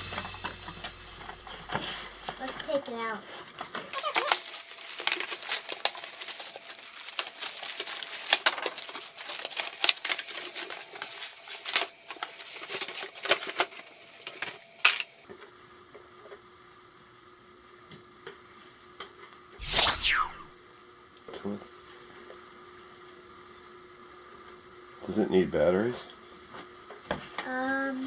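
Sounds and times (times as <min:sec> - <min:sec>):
plastic packaging crinkling: 0:04.0 - 0:13.7.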